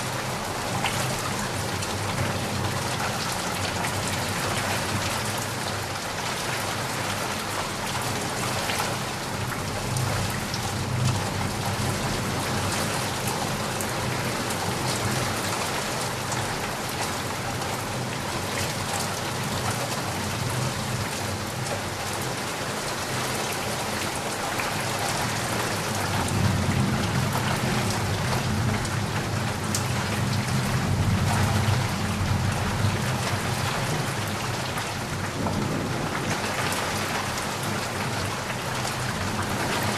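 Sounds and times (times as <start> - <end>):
heavy rain falling: 0.0 - 39.9
low rumble of thunder: 24.8 - 39.9.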